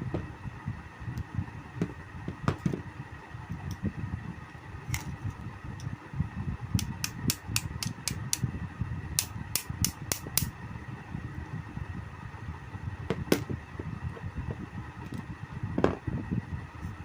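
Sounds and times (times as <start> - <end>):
table fan running with uneven rumble: 0.0 - 17.0
sharp clicks from fan: 3.5 - 3.9, 4.8 - 6.0, 6.7 - 10.6.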